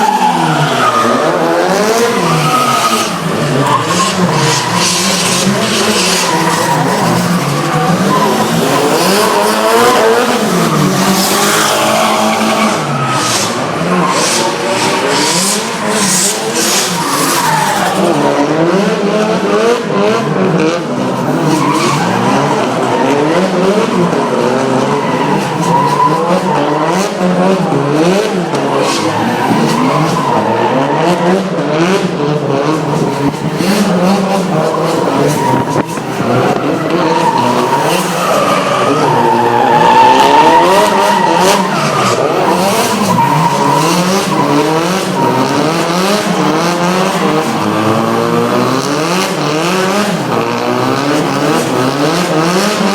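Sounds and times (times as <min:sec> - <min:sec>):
tyres squealing: 0:00.0 - 0:18.1, 0:32.9 - 0:47.8
car engines revving: 0:00.0 - 0:52.9.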